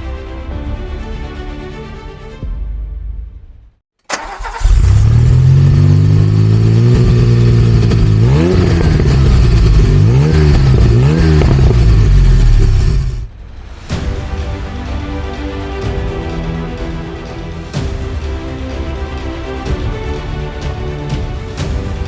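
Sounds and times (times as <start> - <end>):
music: 0.0 - 4.6, 13.4 - 22.0
car engine starting and revving: 4.1 - 13.3.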